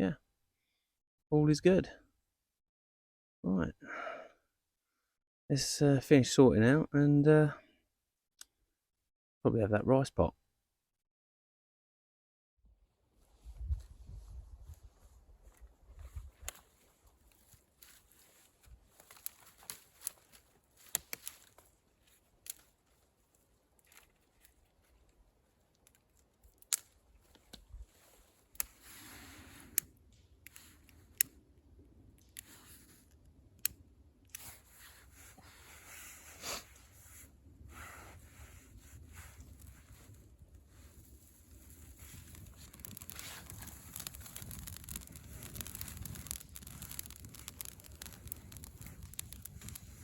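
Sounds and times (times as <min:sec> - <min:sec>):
packaging rustling and crinkling: 0:16.0 - 0:29.3, 0:39.0 - 0:50.0.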